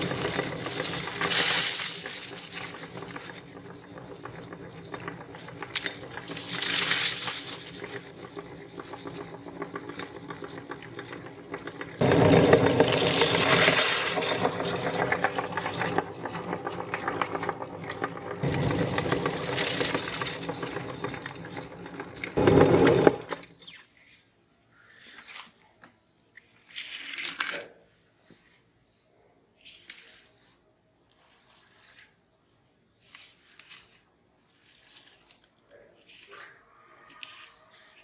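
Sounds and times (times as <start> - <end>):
meat grinder motor humming: 0.0 - 23.4
cereal crunching in grinder: 0.0 - 23.5.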